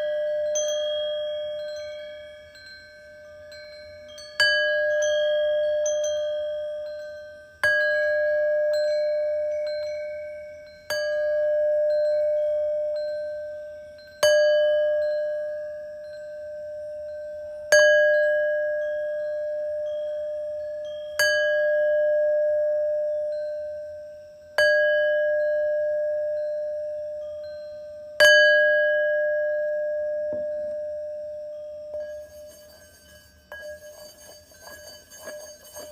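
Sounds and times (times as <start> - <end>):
bell-like tone ringing: 30.5 - 35.9.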